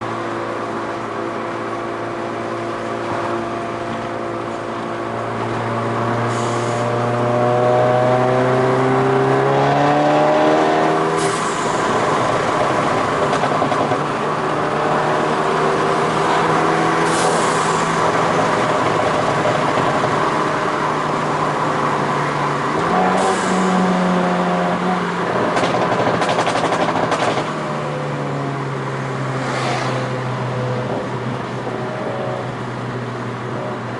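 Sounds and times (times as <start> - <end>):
car engine under load: 0.0 - 33.9
exhaust pops and crackles: 25.5 - 27.5.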